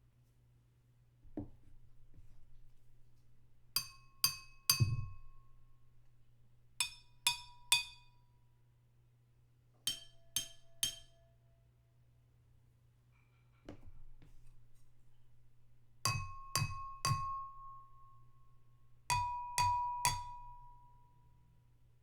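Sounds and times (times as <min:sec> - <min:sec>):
spoon tapping a glass: 0:03.8 - 0:05.3, 0:09.9 - 0:11.2, 0:16.1 - 0:18.0, 0:19.1 - 0:20.8.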